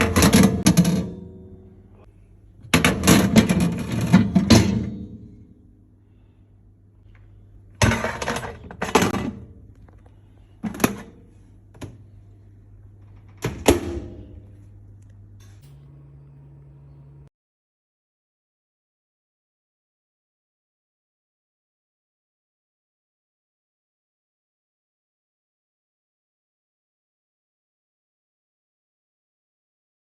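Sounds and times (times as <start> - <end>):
low steady hum: 0.0 - 17.3.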